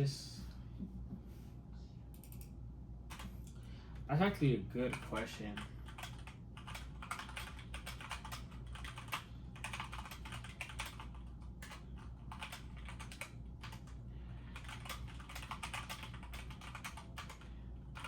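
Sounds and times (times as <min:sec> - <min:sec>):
steady low hum: 0:00.0 - 0:18.0
keyboard typing: 0:03.1 - 0:03.3, 0:04.8 - 0:14.0, 0:14.6 - 0:18.0.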